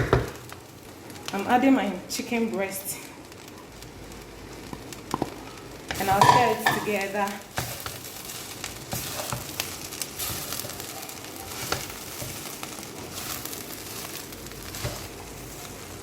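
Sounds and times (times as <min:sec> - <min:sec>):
fried rice sizzling in oil: 0:00.0 - 0:16.0
utensil scraping a pan: 0:07.6 - 0:16.0.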